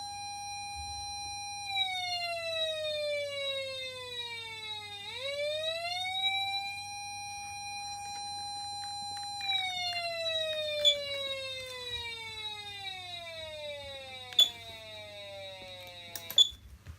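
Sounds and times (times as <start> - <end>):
electronic siren wailing: 0.0 - 16.6.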